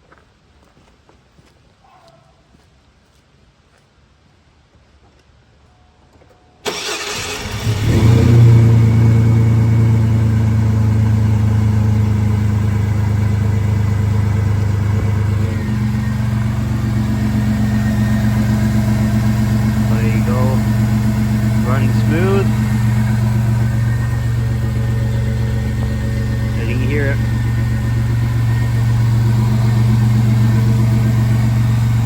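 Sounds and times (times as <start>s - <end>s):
engine cranking and idling: 6.6s - 32.0s.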